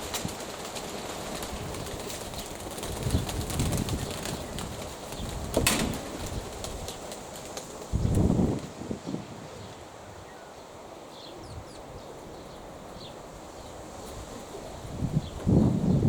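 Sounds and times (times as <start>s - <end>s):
sharp rustling clap: 0.0s - 8.7s
wind noise: 0.0s - 10.3s, 11.4s - 16.0s.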